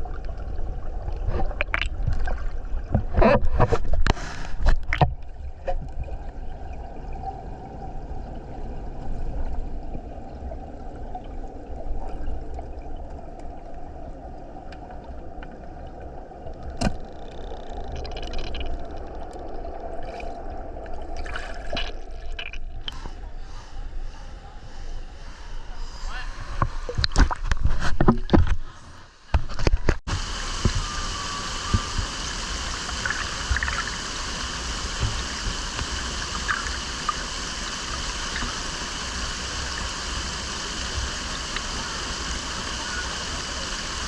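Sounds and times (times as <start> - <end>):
waterfall rushing: 30.1 - 44.0.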